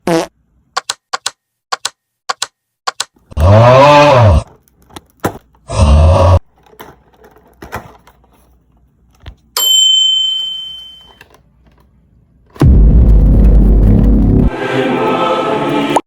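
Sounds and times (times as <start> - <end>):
bell-like chime: 9.6 - 11.2.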